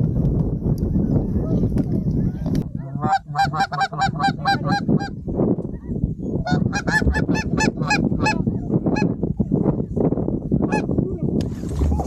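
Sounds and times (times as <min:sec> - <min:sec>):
low rumble: 0:02.4 - 0:05.2
goose honks: 0:02.8 - 0:05.1.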